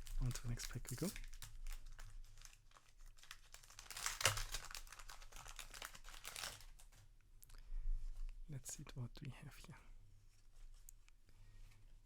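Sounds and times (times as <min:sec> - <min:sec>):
foil pack crinkling and tearing: 0:00.0 - 0:07.0.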